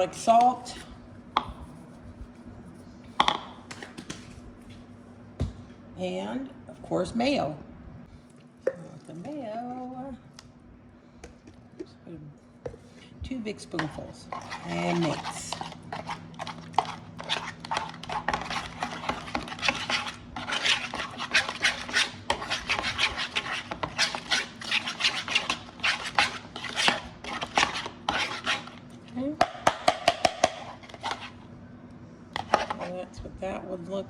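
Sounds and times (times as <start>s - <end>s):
spoon stirring in a bowl: 13.7s - 31.5s, 32.4s - 33.0s.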